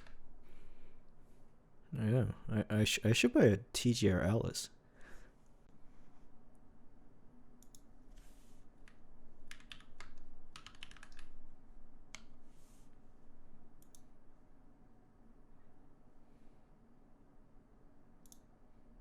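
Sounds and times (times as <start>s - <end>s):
mechanical keyboard typing: 9.5s - 11.4s.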